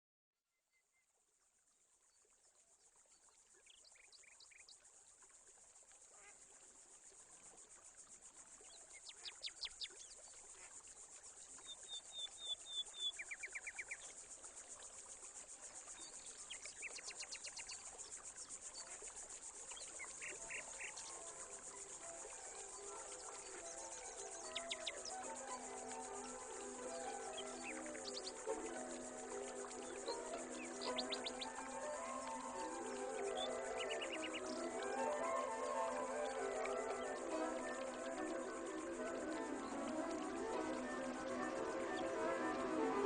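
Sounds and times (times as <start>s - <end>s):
insects trilling: 3.5s - 43.0s
bird chirps and trills: 29.7s - 34.5s.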